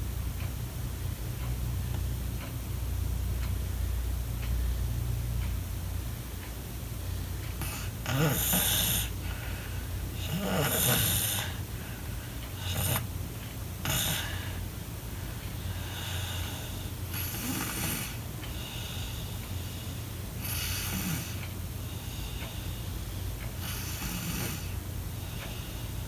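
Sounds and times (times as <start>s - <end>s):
steady low hum: 0.0s - 26.0s
child snoring: 7.6s - 9.6s, 10.2s - 11.6s, 12.6s - 13.1s, 13.8s - 14.6s, 15.7s - 19.8s, 20.4s - 21.5s, 23.6s - 26.0s.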